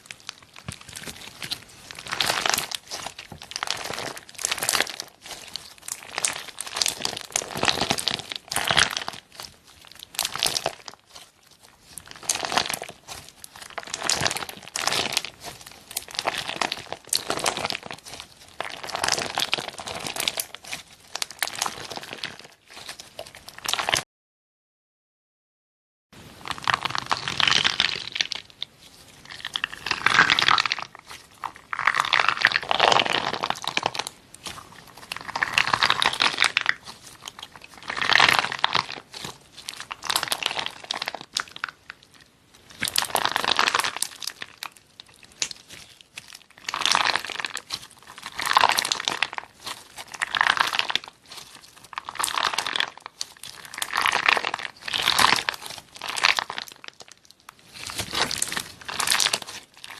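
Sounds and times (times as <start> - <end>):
slime squeezed crackling: 0.0 - 24.0, 26.3 - 59.9.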